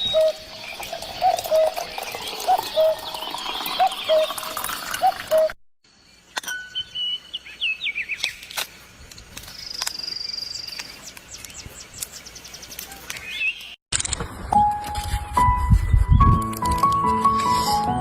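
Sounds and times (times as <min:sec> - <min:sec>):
bird chirps: 0:00.0 - 0:08.4.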